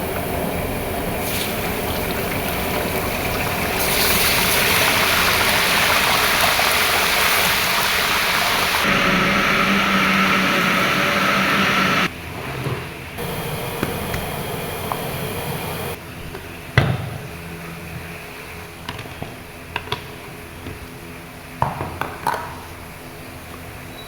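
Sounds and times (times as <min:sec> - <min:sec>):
steady hiss: 0:13.2 - 0:16.0.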